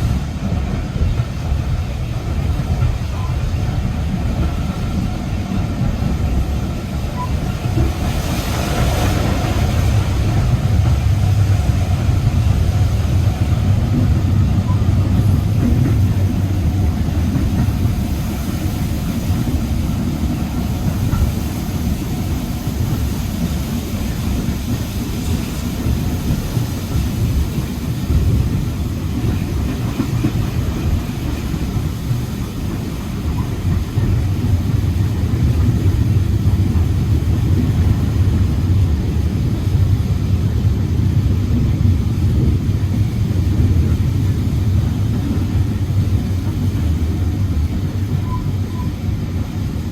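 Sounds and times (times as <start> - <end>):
train wheels rumbling on rails: 0.0 - 49.9.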